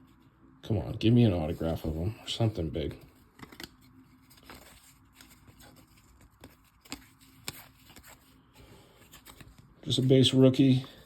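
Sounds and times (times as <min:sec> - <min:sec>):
cards sliding against cards: 0:03.3 - 0:09.7.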